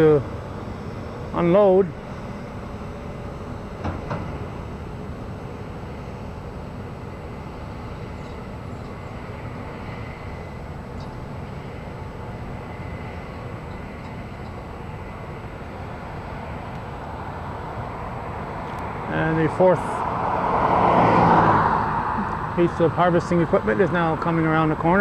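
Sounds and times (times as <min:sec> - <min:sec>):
diesel machinery low rumble: 0:00.0 - 0:25.0.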